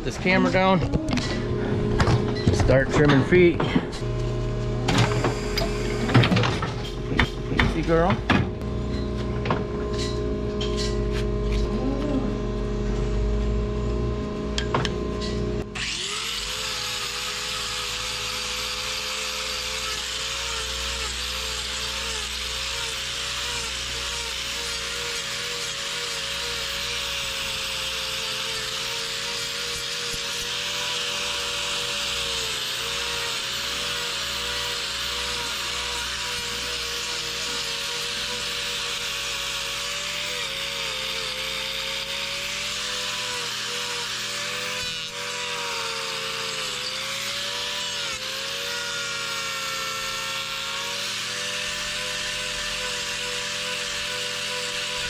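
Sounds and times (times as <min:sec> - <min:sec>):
angle grinder whining: 0:00.0 - 0:55.0.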